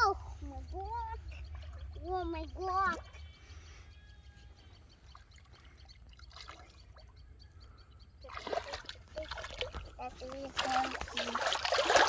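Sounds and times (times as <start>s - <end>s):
river water trickling and splashing: 5.0s - 7.2s, 8.2s - 12.0s.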